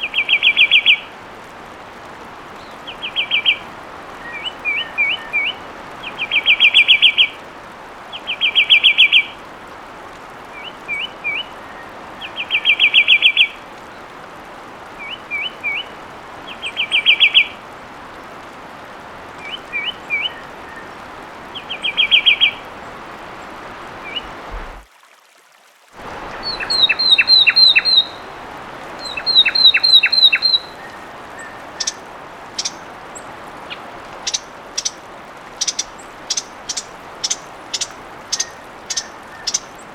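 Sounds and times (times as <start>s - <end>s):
wren song: 0.0s - 1.1s, 2.6s - 7.4s, 10.6s - 13.6s, 15.0s - 17.6s, 19.4s - 22.8s, 23.4s - 24.4s, 26.3s - 39.9s.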